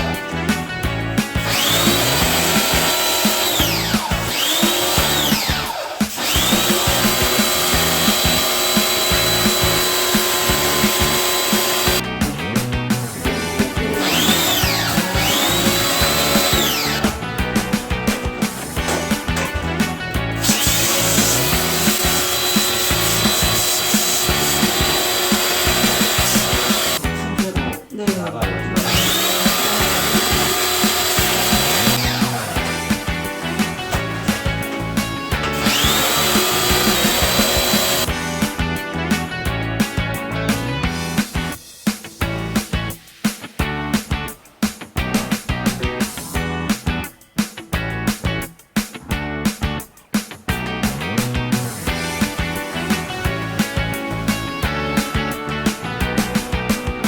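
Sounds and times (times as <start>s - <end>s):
background music with steady beat: 0.0s - 57.0s
power drill whining: 1.4s - 12.0s, 14.0s - 17.3s, 20.4s - 27.0s, 28.8s - 32.4s, 33.0s - 38.1s
cleaning machine hissing: 20.4s - 27.0s.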